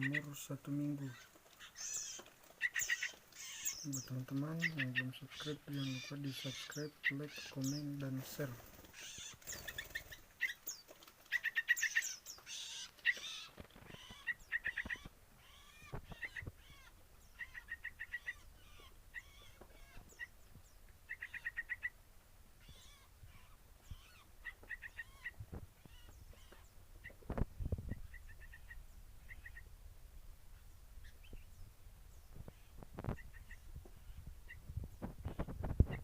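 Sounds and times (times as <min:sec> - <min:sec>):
nestlings chirping to beg: 0:00.0 - 0:22.0, 0:22.6 - 0:29.7.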